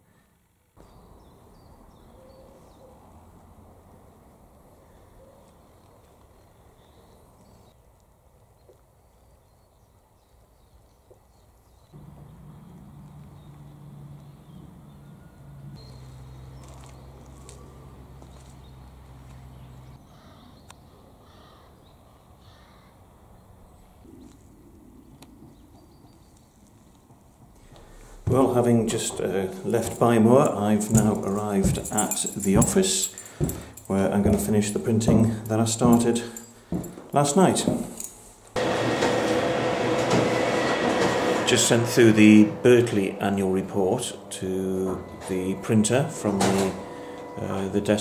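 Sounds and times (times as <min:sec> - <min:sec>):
bird chirps: 0:00.8 - 0:03.1, 0:08.6 - 0:17.3.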